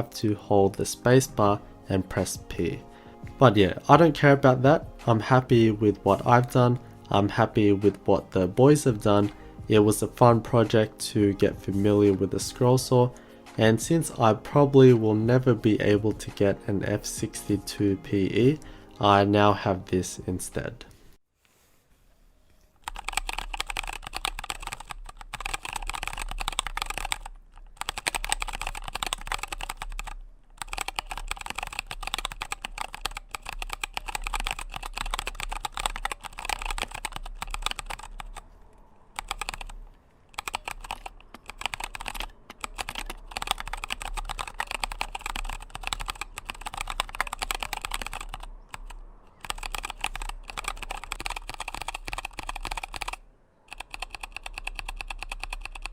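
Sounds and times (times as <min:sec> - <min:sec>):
mechanical keyboard key clacks: 0:22.8 - 0:38.4, 0:39.2 - 0:55.9.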